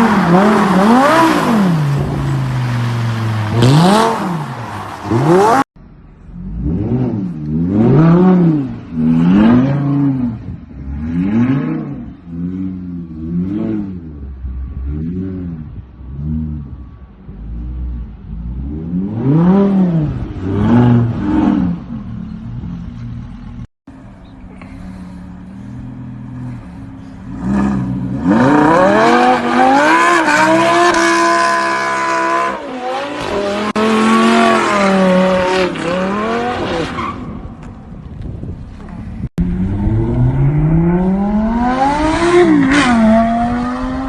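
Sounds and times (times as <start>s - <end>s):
tire screech: 0.0s - 5.6s, 24.2s - 44.0s
car engine revving: 0.0s - 22.8s, 25.0s - 37.1s, 39.4s - 44.0s.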